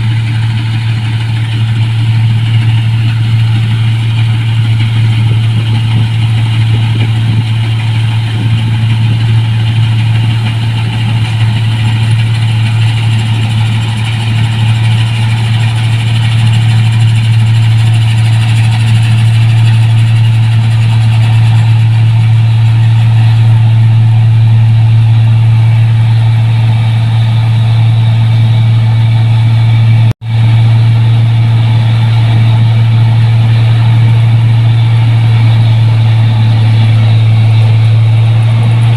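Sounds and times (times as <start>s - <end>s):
combine harvester engine drone: 0.0s - 38.9s
whir of machinery: 0.0s - 38.9s.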